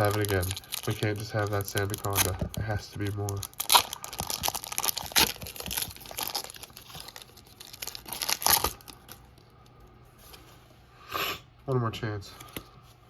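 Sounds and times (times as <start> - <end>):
foil wrapper tearing and crinkling: 0.0 - 9.2.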